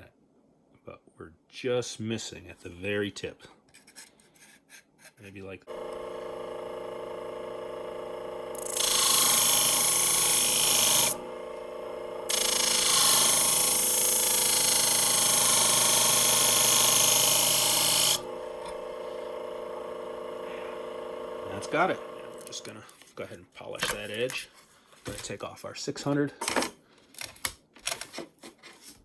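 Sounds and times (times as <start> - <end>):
sharpener motor humming: 5.7 - 22.7
blade grinding hiss: 8.5 - 11.5, 12.3 - 18.8.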